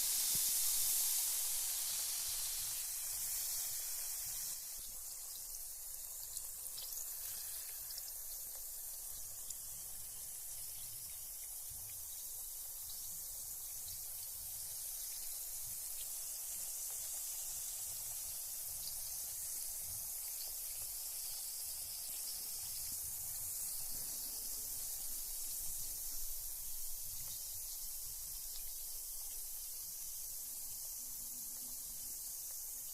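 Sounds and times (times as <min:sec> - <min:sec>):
bath bomb fizzing: 0:00.0 - 0:32.9.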